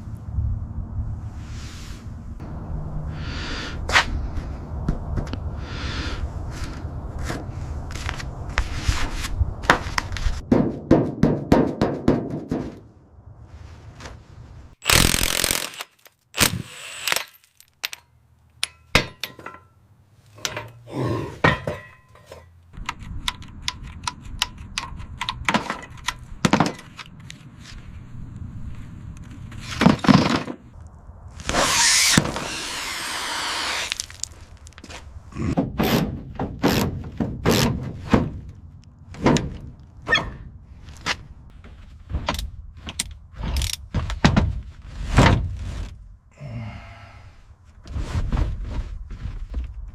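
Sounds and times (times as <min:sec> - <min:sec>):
rushing noise: 0:00.0 - 0:10.4
tools and parts clattering: 0:17.1 - 0:20.8, 0:21.4 - 0:27.2.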